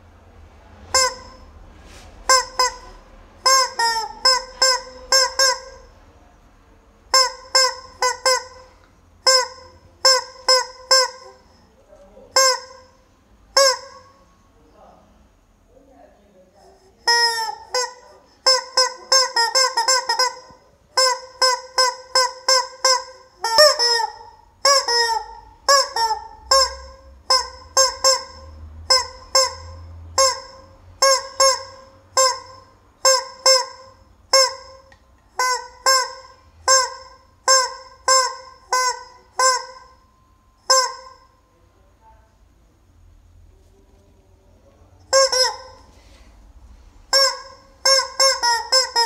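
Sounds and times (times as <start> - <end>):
rubber chicken toy squawking: 0.9 - 1.5, 2.2 - 5.9, 7.1 - 11.6, 12.3 - 14.2, 17.0 - 40.0, 40.6 - 41.3, 45.1 - 46.0, 47.1 - 49.0.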